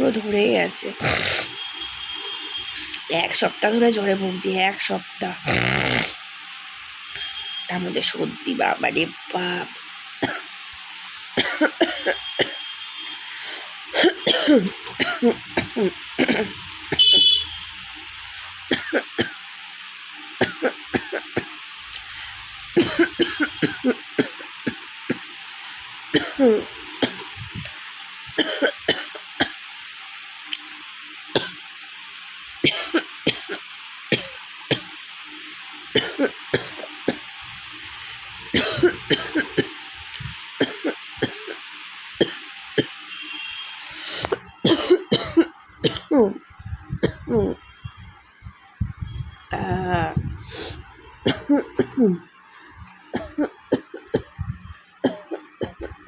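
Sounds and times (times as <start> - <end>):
woman coughing: 11.4 - 12.6, 14.0 - 17.1, 18.7 - 19.4, 20.4 - 21.5, 22.8 - 25.2, 26.2 - 27.3, 28.4 - 29.6, 32.6 - 33.6, 36.0 - 37.2, 38.6 - 39.7, 40.6 - 41.6, 44.1 - 46.4, 47.0 - 47.6, 51.3 - 52.2, 53.2 - 54.4, 55.0 - 56.0.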